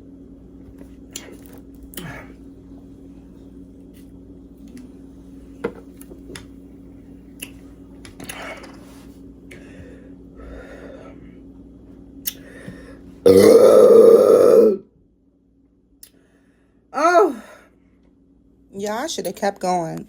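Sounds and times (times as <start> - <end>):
person swallowing: 13.3 - 14.8.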